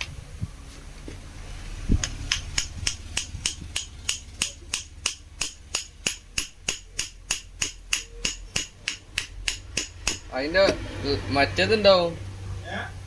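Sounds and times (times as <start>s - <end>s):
hammer tapping on metal: 2.0s - 10.8s.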